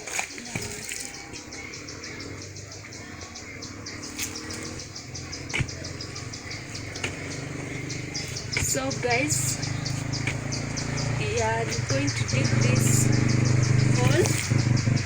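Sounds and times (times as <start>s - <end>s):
insects chirping: 0.0s - 15.0s.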